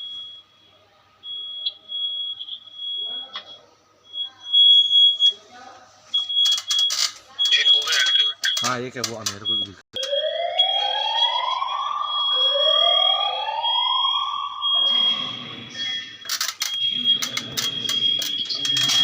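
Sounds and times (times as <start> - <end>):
steady high-pitched alarm tone: 6.2 - 19.0
clicks: 8.4 - 10.2
fire alarm whoop sweeps: 10.0 - 19.0.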